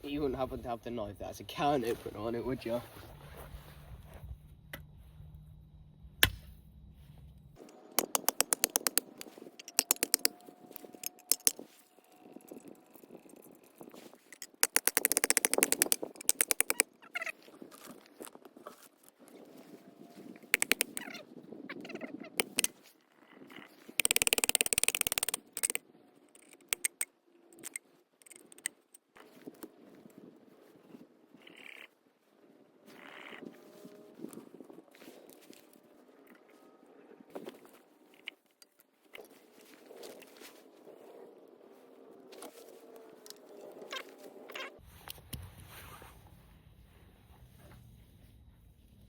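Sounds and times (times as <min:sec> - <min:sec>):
clicks and knocks of gear: 0:07.6 - 0:16.9, 0:20.4 - 0:21.1, 0:22.4 - 0:22.8, 0:23.9 - 0:29.8
fast rattle of clicks: 0:08.0 - 0:11.6, 0:14.4 - 0:16.8, 0:20.4 - 0:21.1, 0:22.4 - 0:22.7, 0:24.0 - 0:25.8, 0:26.4 - 0:28.8.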